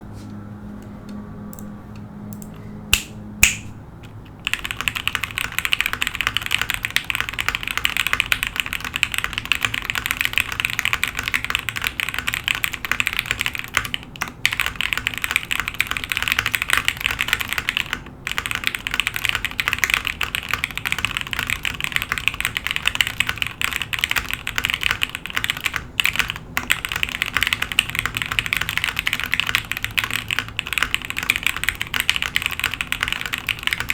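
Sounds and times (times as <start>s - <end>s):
mechanical keyboard typing: 4.2s - 33.9s.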